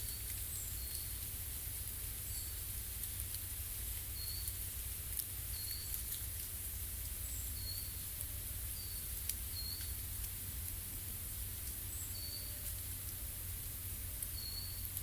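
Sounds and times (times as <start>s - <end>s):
faint ticks: 14.2s - 15.0s
small bird calling: 14.3s - 15.0s.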